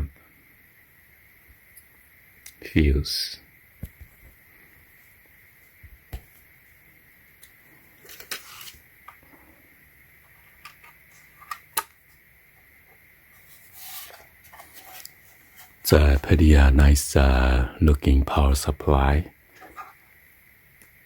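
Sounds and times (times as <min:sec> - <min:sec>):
short rubbing scrapes: 0:13.4 - 0:15.8.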